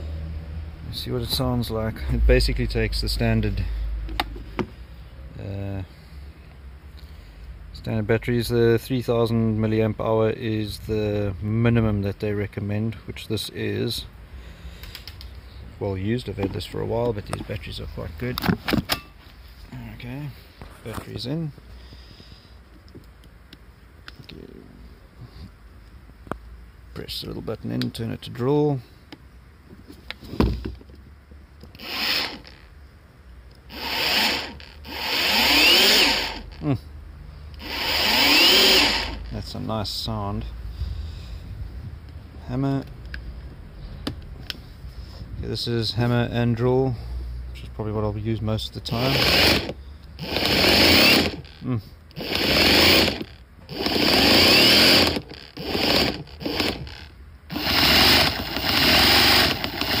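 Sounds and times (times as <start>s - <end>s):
cordless drill motor whining: 31.7s - 32.6s, 33.7s - 36.7s, 37.6s - 39.4s, 49.0s - 60.0s.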